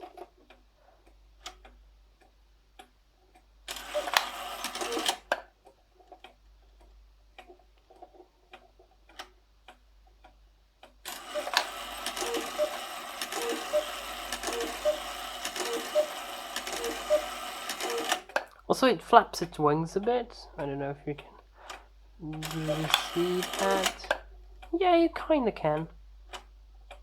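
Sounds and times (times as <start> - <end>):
clock ticking: 0.0 - 27.0
clock striking train whirring: 11.1 - 18.3, 22.4 - 24.2.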